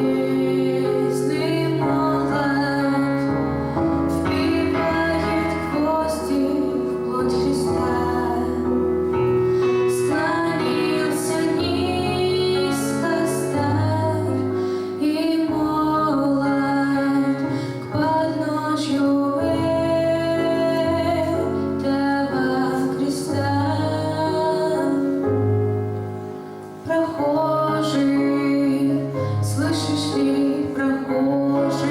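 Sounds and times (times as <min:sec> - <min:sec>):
woman singing: 0:00.0 - 0:25.5, 0:26.8 - 0:31.9.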